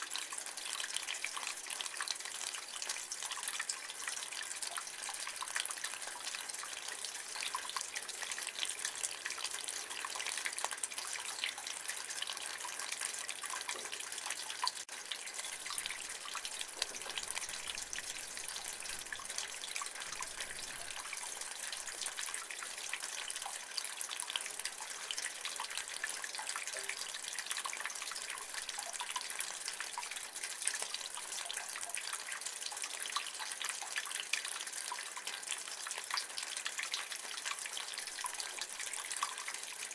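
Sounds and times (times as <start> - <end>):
rainwater dripping from gutter: 0.0 - 39.9.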